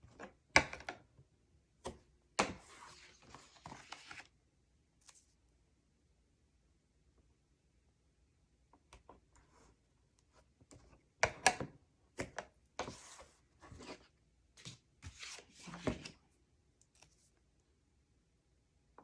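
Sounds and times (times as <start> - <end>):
paper rustling and scraping: 2.6 - 4.3, 12.8 - 16.2.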